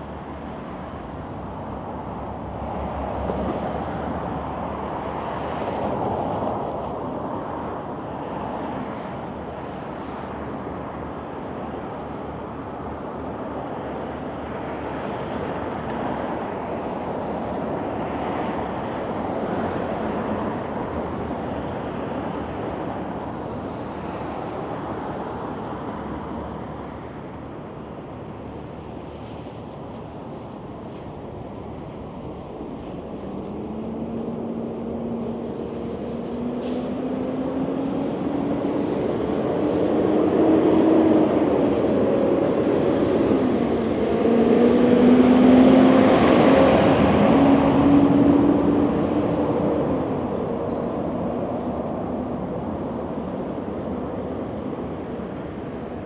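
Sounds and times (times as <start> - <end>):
cars passing: 30.2 - 53.0.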